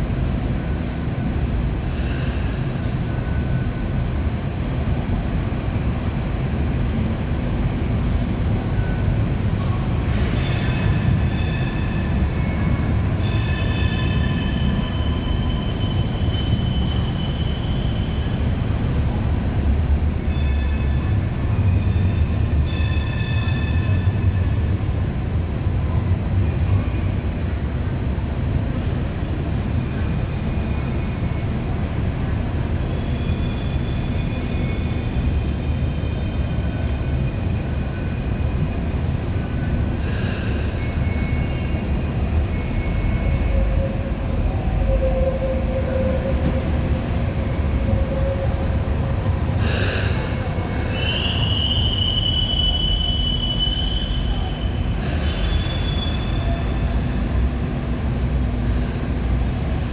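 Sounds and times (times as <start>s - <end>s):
tram wheels and motors rumbling: 0.0s - 59.9s
high-pitched wheel squeal: 50.7s - 56.9s.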